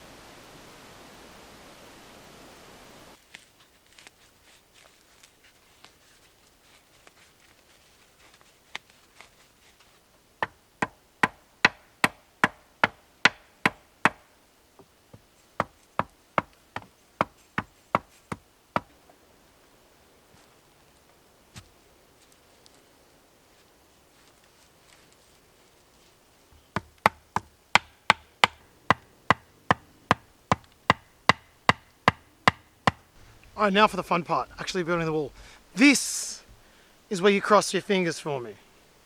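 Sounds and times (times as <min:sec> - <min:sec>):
tool striking wooden stakes: 0:10.4 - 0:19.0, 0:26.7 - 0:33.2.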